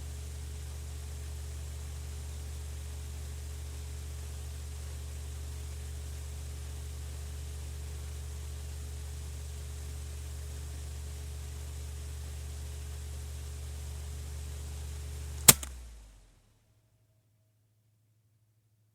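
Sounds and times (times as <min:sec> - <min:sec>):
electric fan humming: 0:15.4 - 0:15.7
fan switch click: 0:15.4 - 0:15.7.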